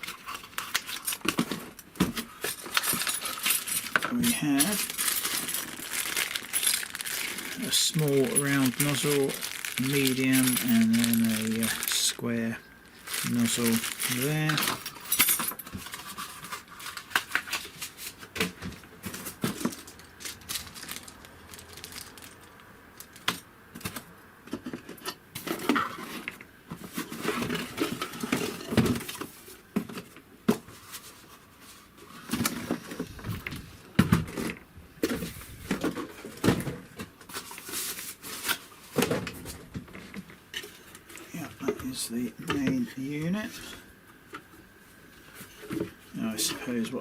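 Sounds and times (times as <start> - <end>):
small hard parts clicking and knocking: 0.0 - 12.1.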